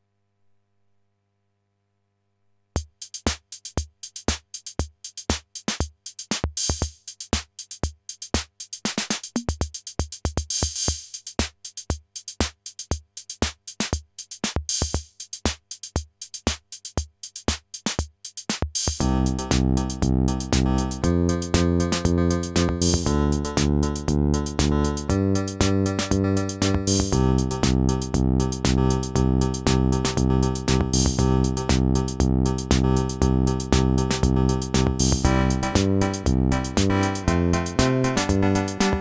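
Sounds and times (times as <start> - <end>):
electronic drum pattern: 2.8 - 39.0
sustained keyboard chords: 19.0 - 39.0.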